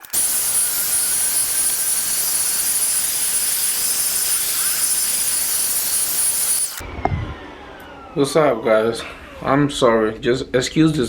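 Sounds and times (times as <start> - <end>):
rushing hiss: 0.0 - 6.8.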